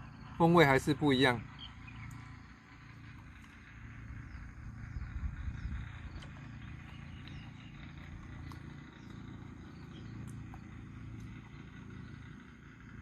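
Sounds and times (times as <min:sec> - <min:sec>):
low rumble on microphone: 0:00.0 - 0:13.0
faint high bird chirps: 0:01.5 - 0:02.4.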